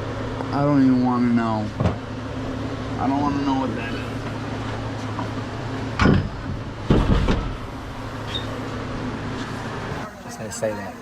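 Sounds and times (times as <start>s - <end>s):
low vehicle hum: 0.0s - 10.6s
loud rattling thumps: 6.0s - 7.7s.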